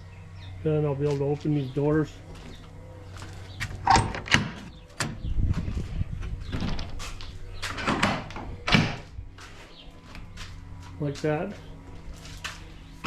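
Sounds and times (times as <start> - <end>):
doors rattling open: 2.5 - 10.3
shed doors knocking and clunking: 3.6 - 9.1.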